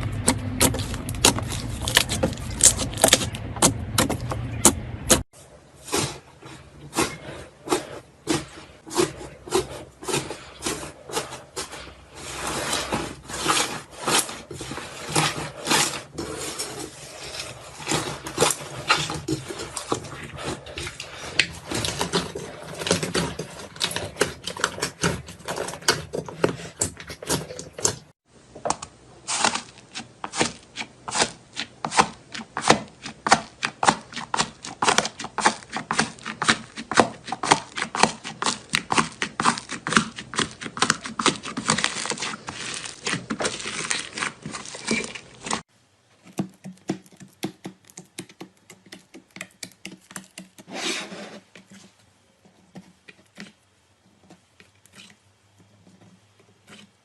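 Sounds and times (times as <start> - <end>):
crunchy slime crackling and popping: 29.3 - 45.7.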